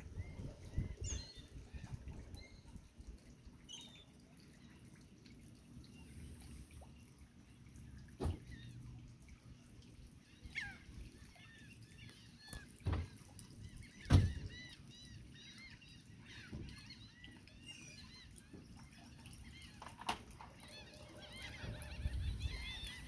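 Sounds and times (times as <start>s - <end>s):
flock of birds calling: 19.4s - 23.0s.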